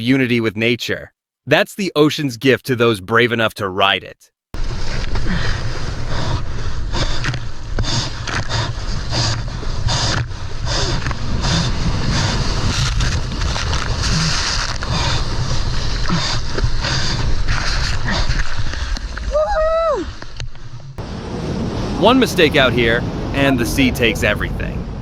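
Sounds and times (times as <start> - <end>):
wind: 4.6 - 25.0
wind rumble on microphone: 4.6 - 25.0
rushing water: 21.0 - 24.6.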